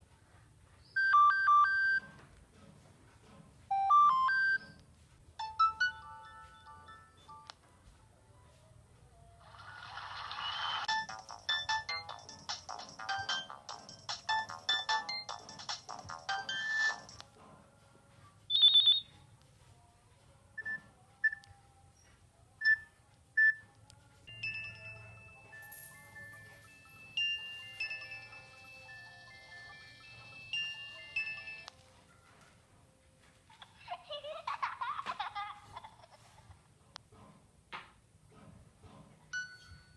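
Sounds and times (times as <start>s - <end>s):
electronic beeping melody: 3.7s - 4.8s, 5.4s - 7.4s, 10.8s - 17.2s, 24.3s - 31.7s
ringtone with long ringing notes: 5.4s - 7.4s, 10.9s - 17.1s, 24.3s - 31.7s.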